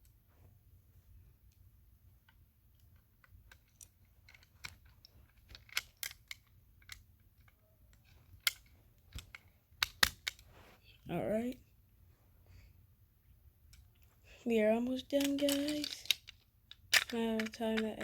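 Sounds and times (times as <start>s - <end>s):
toy car parts clicking: 2.2s - 10.4s, 15.0s - 18.0s.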